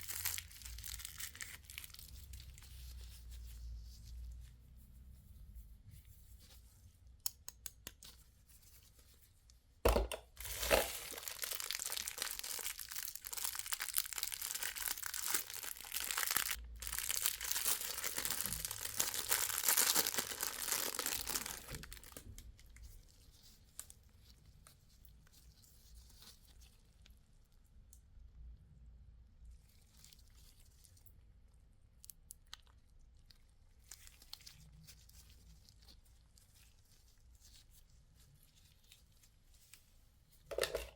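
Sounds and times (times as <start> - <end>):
plastic wrapper tearing: 0.0 - 2.6, 10.4 - 22.6
plastic wrapper crinkling: 0.0 - 3.1, 10.2 - 24.0.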